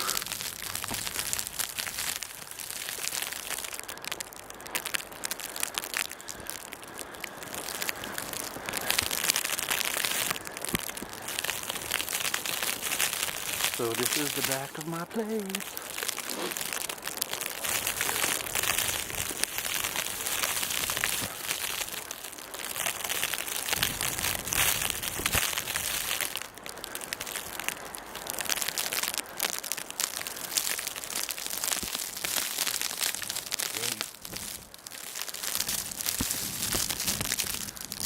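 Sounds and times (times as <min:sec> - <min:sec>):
steady hiss: 0:00.0 - 0:37.9
footsteps crunching in snow: 0:11.3 - 0:16.8.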